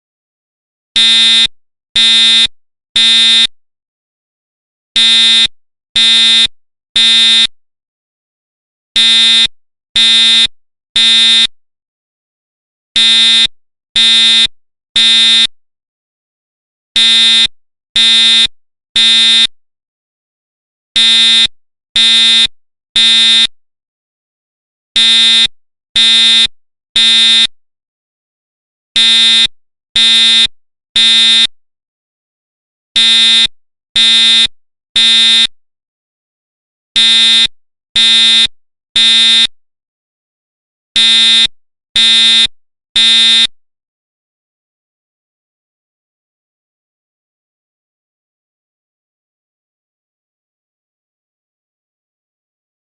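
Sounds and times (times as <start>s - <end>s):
fire alarm beeps: 17.0s - 18.4s, 21.0s - 22.4s, 25.0s - 27.5s, 29.0s - 31.5s, 33.0s - 35.5s, 37.0s - 39.5s, 41.0s - 43.5s.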